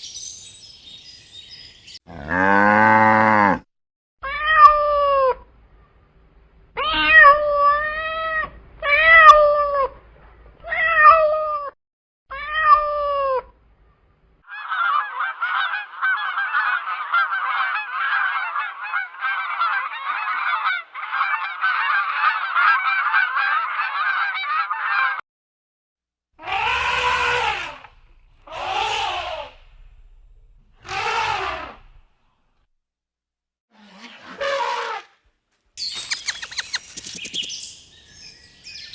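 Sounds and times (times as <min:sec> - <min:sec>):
rough animal calls: 0:02.0 - 0:03.6, 0:26.4 - 0:32.2, 0:35.8 - 0:38.9
drawn-out animal cries: 0:26.4 - 0:29.6, 0:30.8 - 0:31.9, 0:35.9 - 0:38.9
flock chattering: 0:35.8 - 0:38.5.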